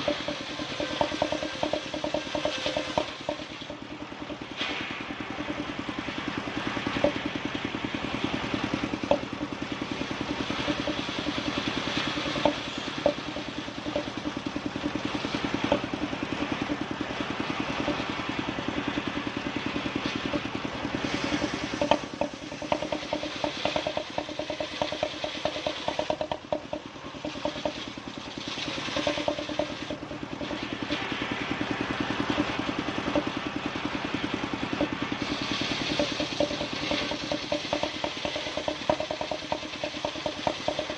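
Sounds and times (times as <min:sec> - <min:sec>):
quick rattling ticks: 0:00.0 - 0:05.7, 0:06.4 - 0:16.8, 0:19.6 - 0:33.4, 0:34.1 - 0:40.9
sharp knocks: 0:00.0 - 0:05.8, 0:06.9 - 0:07.4, 0:10.2 - 0:14.4, 0:21.1 - 0:31.2, 0:34.8 - 0:40.9
sawing machine engine running: 0:00.0 - 0:40.9.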